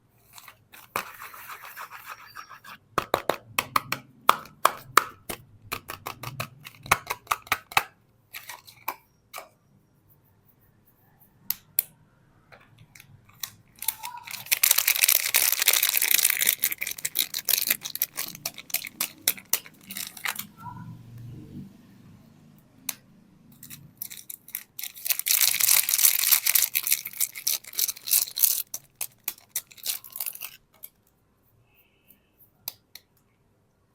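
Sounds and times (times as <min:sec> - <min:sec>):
wrappers tearing and crinkling: 0:13.4 - 0:20.5, 0:23.6 - 0:30.7.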